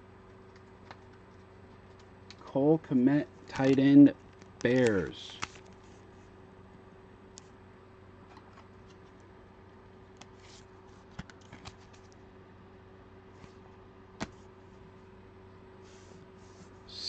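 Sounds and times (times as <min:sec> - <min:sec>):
low electrical hum: 0:00.0 - 0:17.0
trading cards clicking and rustling: 0:03.4 - 0:05.9, 0:10.2 - 0:12.2, 0:14.2 - 0:14.4.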